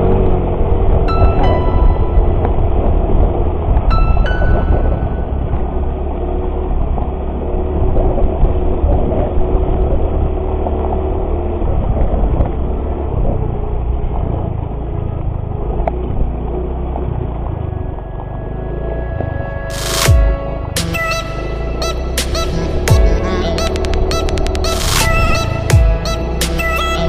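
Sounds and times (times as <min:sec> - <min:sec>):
motorcycle engine running: 0:21.7 - 0:27.0.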